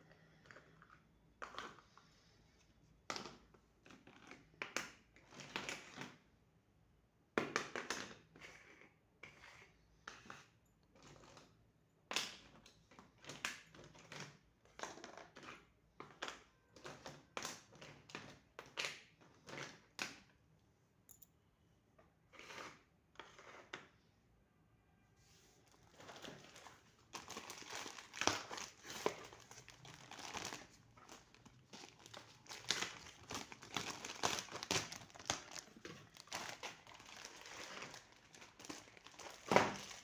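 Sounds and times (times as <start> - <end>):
packaging rustling: 25.8 - 40.0.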